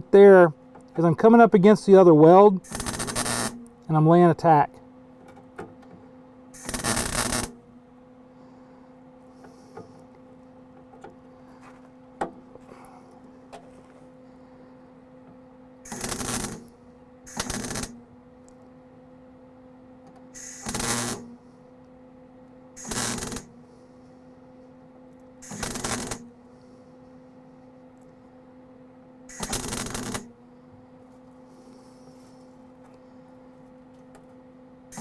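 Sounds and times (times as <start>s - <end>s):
steady low hum: 0.0s - 35.0s
welder crackling bursts: 2.6s - 3.7s, 6.6s - 7.6s, 15.8s - 18.0s, 20.4s - 21.3s, 22.8s - 23.6s, 25.4s - 26.3s, 29.3s - 30.4s.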